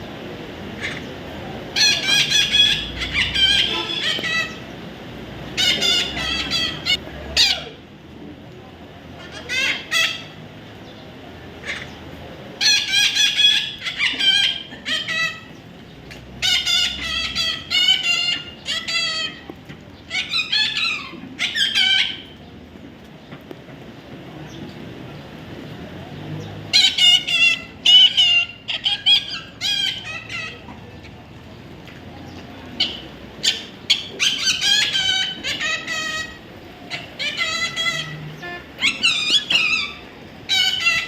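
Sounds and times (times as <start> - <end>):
parrot harsh cries: 0.8 - 1.1, 1.7 - 4.7, 5.5 - 7.8, 9.2 - 10.4, 11.6 - 12.0, 12.6 - 15.6, 16.4 - 19.4, 20.1 - 22.3, 26.7 - 30.7, 32.8 - 41.0.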